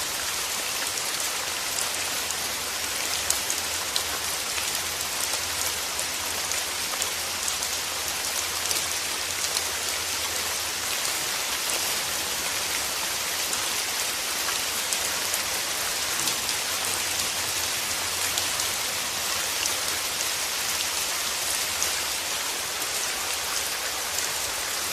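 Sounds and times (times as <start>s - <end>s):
steady rain falling: 0.0s - 24.9s.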